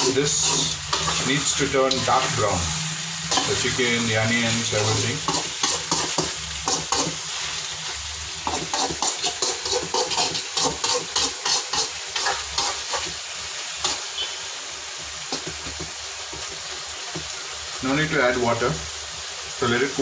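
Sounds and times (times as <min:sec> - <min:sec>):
spatula scraping a pan: 0:00.0 - 0:14.5, 0:15.2 - 0:17.4
food sizzling in oil: 0:00.0 - 0:20.0.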